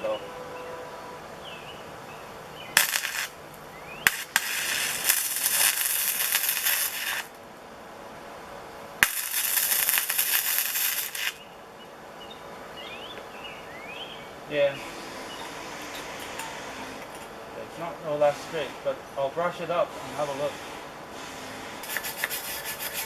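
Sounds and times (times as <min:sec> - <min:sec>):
welder arc crackling: 0:01.9 - 0:07.6, 0:09.0 - 0:11.5, 0:21.3 - 0:23.0.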